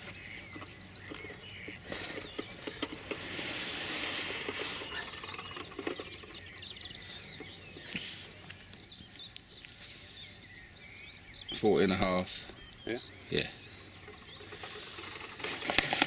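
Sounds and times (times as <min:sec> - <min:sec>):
small birds chirping: 0:00.0 - 0:16.0
handling clicks and knocks: 0:00.1 - 0:03.3, 0:04.4 - 0:07.6.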